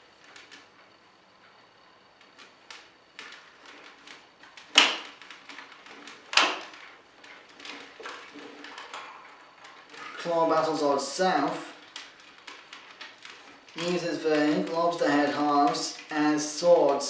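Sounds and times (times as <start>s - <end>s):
sharp plastic clacks: 2.2s - 17.0s.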